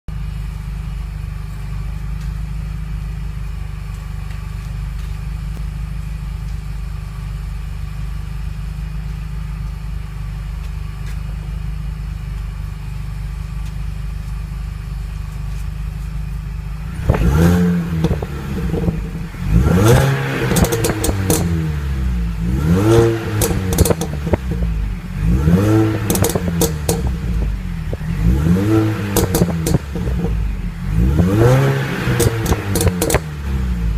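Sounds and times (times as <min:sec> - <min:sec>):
car engine idling and revving: 0:00.1 - 0:33.9
exhaust crackles and pops: 0:01.8 - 0:07.1, 0:10.4 - 0:33.6.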